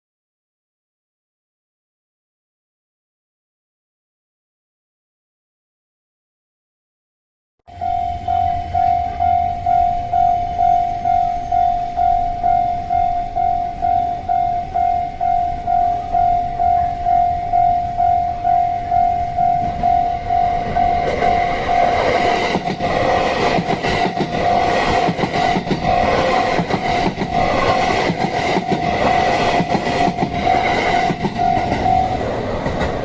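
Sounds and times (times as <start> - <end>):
level-crossing alarm bell: 7.7 - 33.0
train rumble: 7.7 - 33.0
wheels clicking over rail joints: 19.4 - 33.0.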